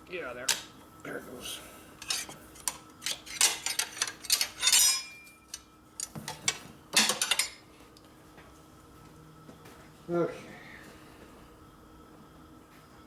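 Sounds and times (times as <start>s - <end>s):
metal tools clinking and knocking: 2.0s - 7.6s
metallic ring: 3.0s - 5.7s.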